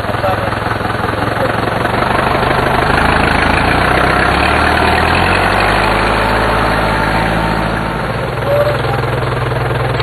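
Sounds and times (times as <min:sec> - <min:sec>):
vehicle engine running: 0:00.0 - 0:10.0.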